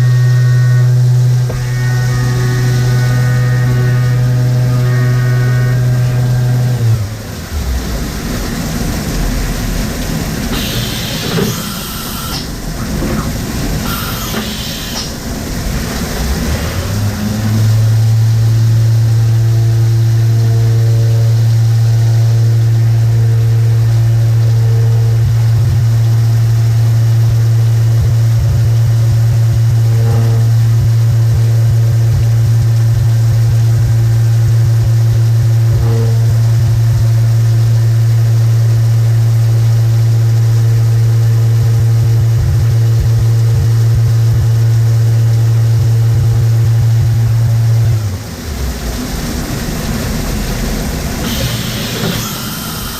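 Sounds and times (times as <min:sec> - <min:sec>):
milling machine spindle running: 0:00.0 - 0:52.9
short hissing air bursts: 0:10.6 - 0:12.6, 0:13.8 - 0:15.2.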